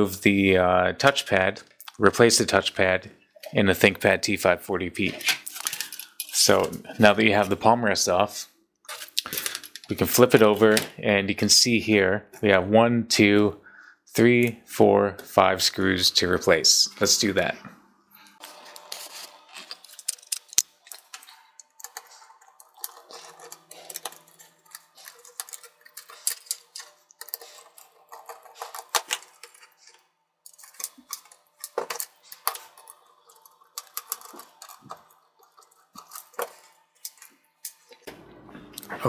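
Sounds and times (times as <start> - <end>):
screws and plastic parts rattling: 5.1 - 6.8, 8.9 - 10.0, 19.5 - 38.1.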